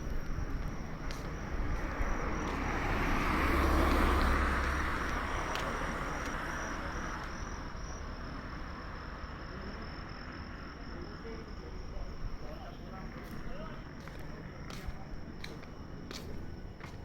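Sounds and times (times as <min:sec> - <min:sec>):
road vehicle passing by: 0:00.0 - 0:09.3.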